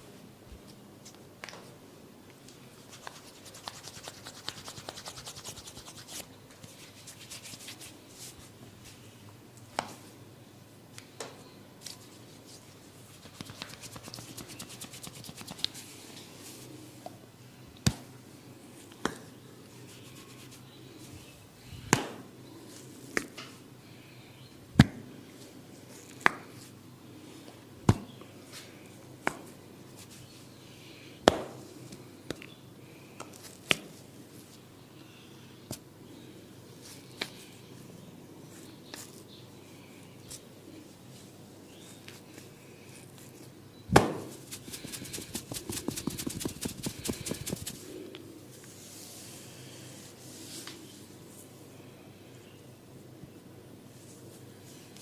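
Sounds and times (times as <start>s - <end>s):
comb scratching through hair: 2.8s - 8.4s, 13.1s - 15.8s, 44.4s - 47.9s
sharp snaps: 13.2s - 15.8s.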